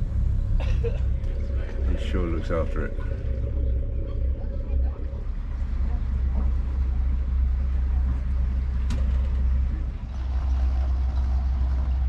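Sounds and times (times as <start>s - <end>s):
boat engine rumbling: 0.0s - 12.0s.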